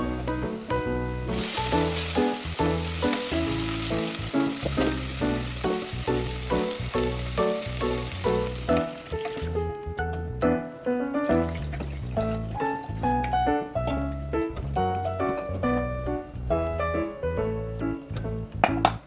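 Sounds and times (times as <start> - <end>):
food sizzling in frying pan: 0.0 - 9.7.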